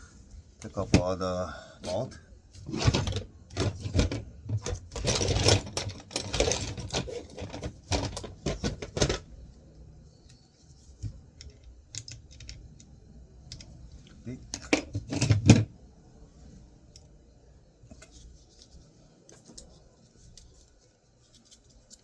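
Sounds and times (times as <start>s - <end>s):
hand tools clicking on metal casing: 2.7s - 9.2s.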